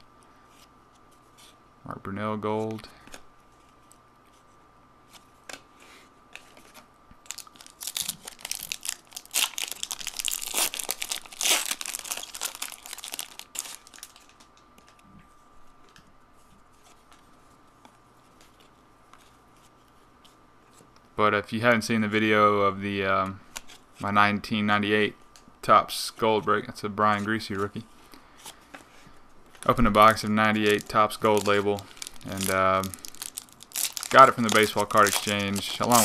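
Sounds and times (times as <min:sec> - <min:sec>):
foil wrapper tearing and crinkling: 0:07.2 - 0:14.5, 0:29.9 - 0:36.0.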